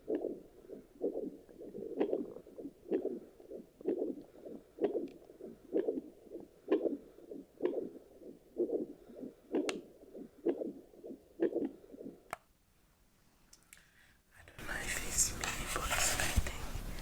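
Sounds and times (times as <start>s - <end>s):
doppler heartbeat pulses: 0.0s - 12.3s.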